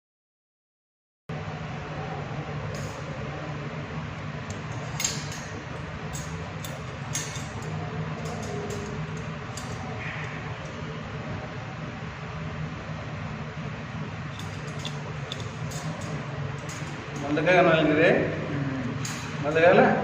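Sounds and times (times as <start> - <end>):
steady low hum: 1.3 - 20.0
metallic clinks of wire mesh: 4.5 - 9.9, 14.3 - 17.4, 19.0 - 19.6.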